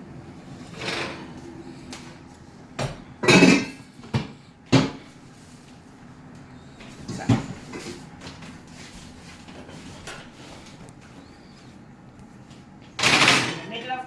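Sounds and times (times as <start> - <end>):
metal pots knocking and clanking: 3.2 - 3.9.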